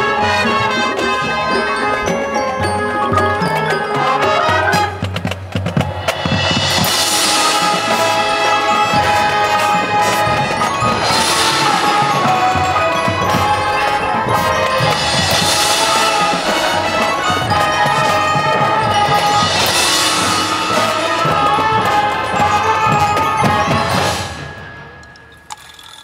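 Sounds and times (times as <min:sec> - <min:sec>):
marching band playing: 0:00.0 - 0:25.8
cymbal crashes: 0:06.0 - 0:09.3.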